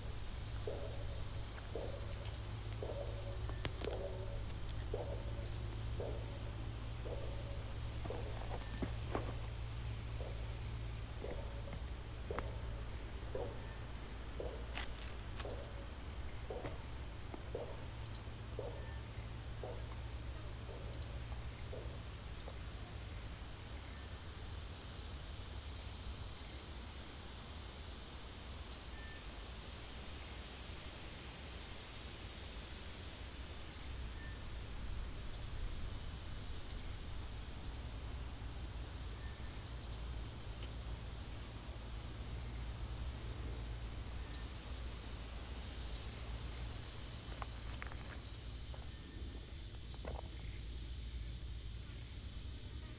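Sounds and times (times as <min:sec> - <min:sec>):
bird chirping: 0:00.0 - 0:23.2
insect drone: 0:00.0 - 0:52.9.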